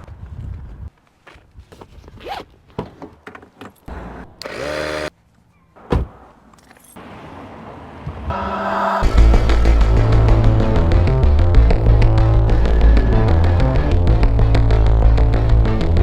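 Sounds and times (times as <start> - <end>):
music: 8.6 - 16.0.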